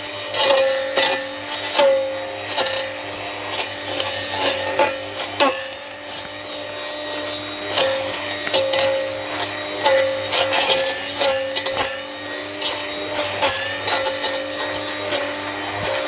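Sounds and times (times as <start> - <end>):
brush cutter motor whining: 0.0 - 16.0
stems cracking as cut: 3.5 - 11.9, 12.6 - 16.0.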